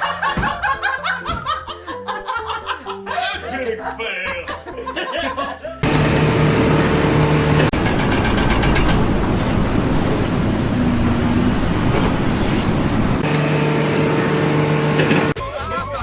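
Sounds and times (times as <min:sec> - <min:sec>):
steady hum with held tones: 0:05.8 - 0:07.7, 0:13.2 - 0:15.4
heavy machine rumbling: 0:05.8 - 0:12.3, 0:13.0 - 0:15.4.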